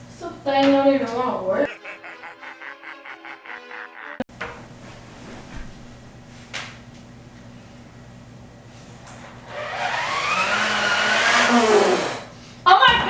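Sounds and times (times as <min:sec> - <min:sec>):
hair dryer blowing: 0:09.4 - 0:12.3.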